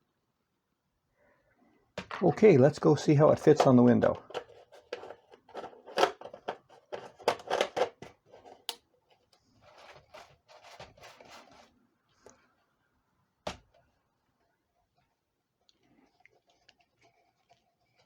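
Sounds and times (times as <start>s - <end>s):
handling clicks and knocks: 2.0s - 8.8s.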